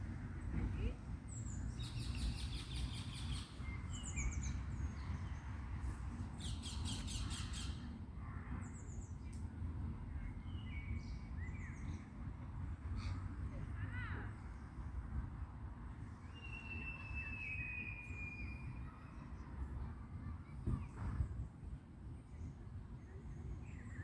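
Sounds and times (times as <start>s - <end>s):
songbirds chirping and trilling: 1.3s - 9.4s.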